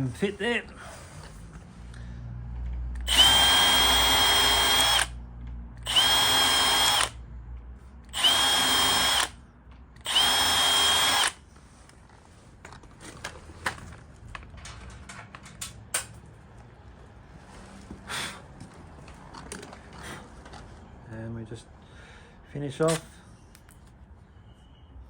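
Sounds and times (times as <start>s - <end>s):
power drill whining: 3.0s - 5.2s, 5.8s - 7.2s, 8.1s - 9.4s, 10.0s - 11.4s.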